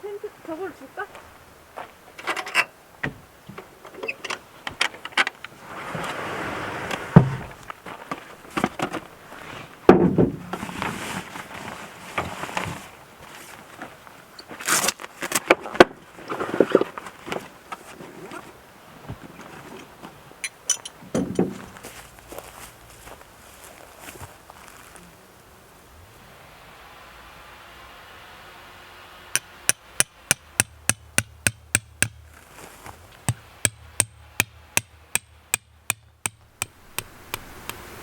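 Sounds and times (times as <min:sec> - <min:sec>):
tent parts clicking and knocking: 0:19.8 - 0:22.2, 0:29.4 - 0:37.9.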